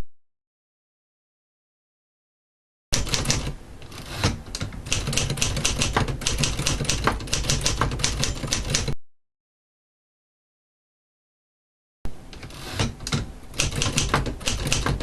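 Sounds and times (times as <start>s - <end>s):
typewriter keys clicking: 3.0s - 3.5s, 4.5s - 9.0s, 12.8s - 15.0s.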